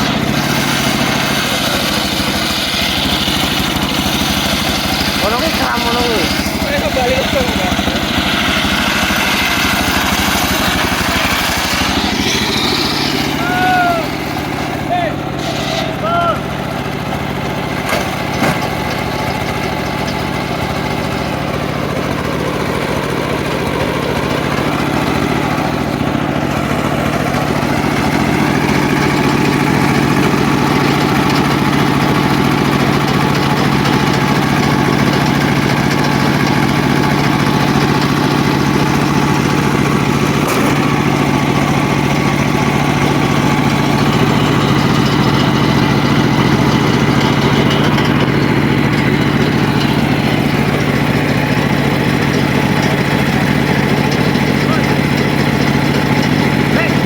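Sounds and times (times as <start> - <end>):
circular sawmill running: 0.0 - 57.0.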